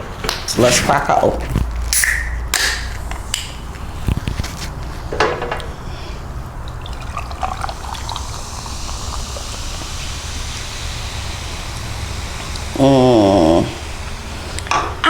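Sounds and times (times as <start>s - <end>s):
soda fizzing: 0.6s - 4.3s, 6.0s - 15.0s
can clicking and knocking: 1.9s - 3.6s
soda pouring into a glass: 6.6s - 14.3s.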